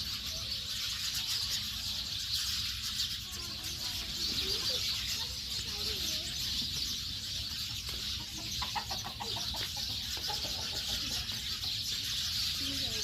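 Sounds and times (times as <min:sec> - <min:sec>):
chicken clucking: 0:03.8 - 0:12.4.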